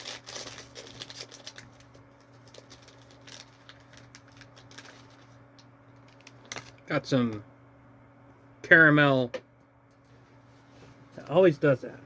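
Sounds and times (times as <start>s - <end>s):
cookie packaging crinkling: 0.0s - 6.9s
steady low hum: 0.0s - 12.0s.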